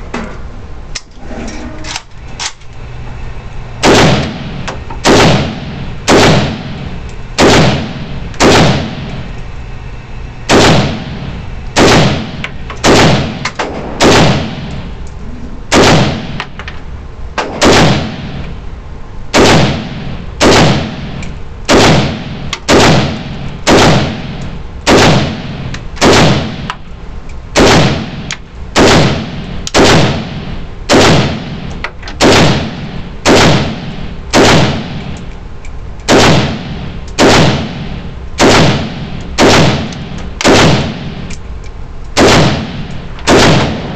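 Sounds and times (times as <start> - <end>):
rifle firing semi-automatic: 11.8 - 14.7, 19.4 - 21.1, 21.7 - 24.3, 24.9 - 26.7, 27.6 - 31.6, 32.2 - 35.1, 36.1 - 41.2, 42.2 - 43.9.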